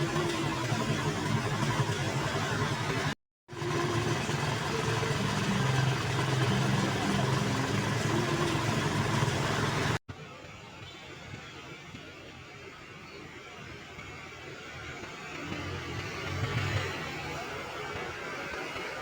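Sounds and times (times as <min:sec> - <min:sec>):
bus engine humming: 0:00.0 - 0:10.0.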